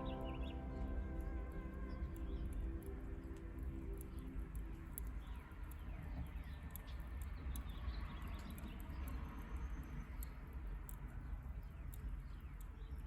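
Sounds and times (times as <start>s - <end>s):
steady low rumble: 0.0s - 6.6s
faint clicks: 0.0s - 13.0s
small birds chirping: 0.0s - 13.0s.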